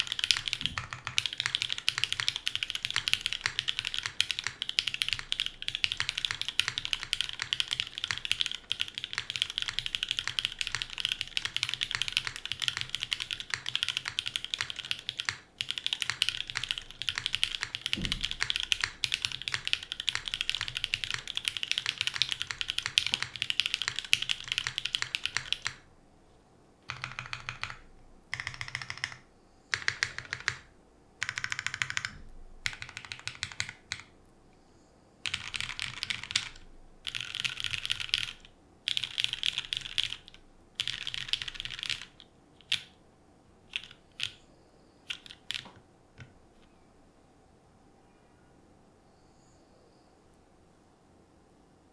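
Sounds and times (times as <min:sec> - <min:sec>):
mechanical keyboard typing: 0:00.0 - 0:25.8, 0:26.9 - 0:34.1, 0:35.2 - 0:42.9, 0:43.7 - 0:44.4, 0:45.1 - 0:46.3
rapid modifier key presses: 0:00.0 - 0:25.8, 0:31.2 - 0:34.1, 0:43.7 - 0:44.4, 0:45.1 - 0:46.3.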